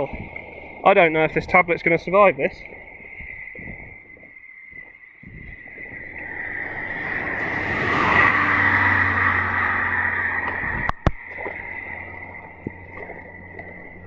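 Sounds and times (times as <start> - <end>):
tyres hissing through water: 0.0 - 14.0
thin high whine: 5.6 - 14.0.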